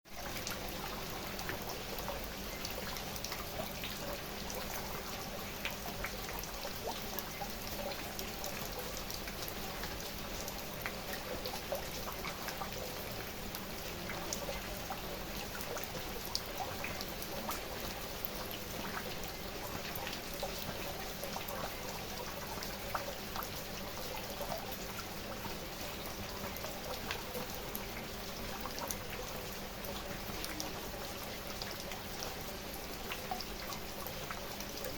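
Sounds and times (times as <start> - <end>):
rain drops pattering: 0.0 - 34.9.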